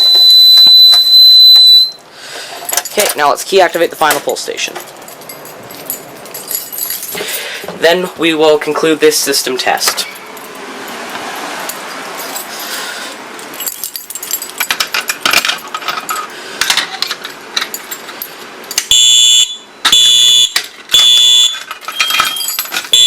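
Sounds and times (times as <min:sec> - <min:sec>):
fire alarm horn beeps: 0:00.0 - 0:02.0, 0:18.9 - 0:21.6
keys jangling and clicking: 0:02.6 - 0:03.2, 0:04.1 - 0:07.8, 0:09.9 - 0:19.0, 0:21.0 - 0:23.0.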